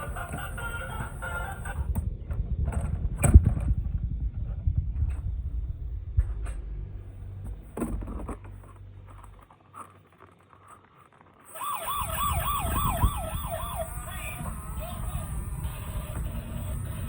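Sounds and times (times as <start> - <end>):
toy siren warbling: 11.5 - 17.0.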